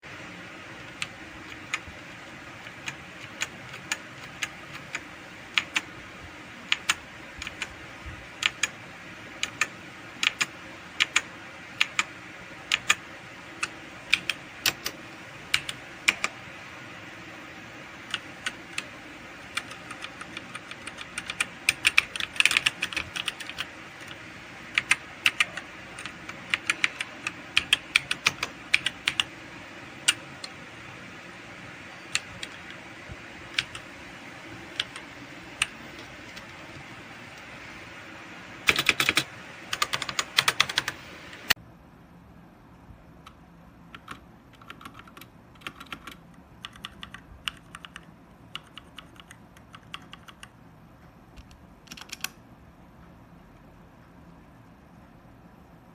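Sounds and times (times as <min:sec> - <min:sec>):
mechanical keyboard typing: 0:00.8 - 0:05.9, 0:06.6 - 0:08.8, 0:09.4 - 0:16.5, 0:18.0 - 0:29.4, 0:30.0 - 0:30.6, 0:32.0 - 0:37.6, 0:38.6 - 0:41.5, 0:43.3 - 0:50.6, 0:51.4 - 0:52.4.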